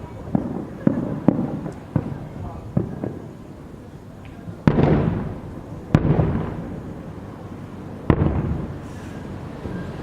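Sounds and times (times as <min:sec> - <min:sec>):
firework shells booming: 0:00.0 - 0:03.6, 0:04.2 - 0:07.2, 0:08.0 - 0:09.1.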